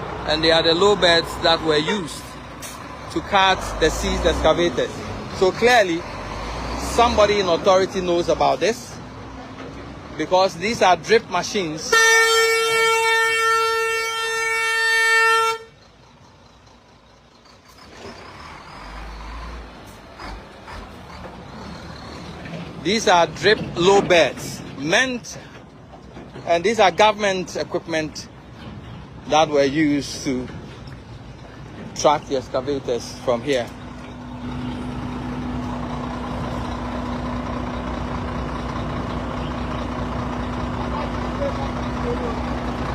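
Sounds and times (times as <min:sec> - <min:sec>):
heavy truck engine idling: 0:07.2 - 0:42.9
vehicle horn long note: 0:11.9 - 0:15.8.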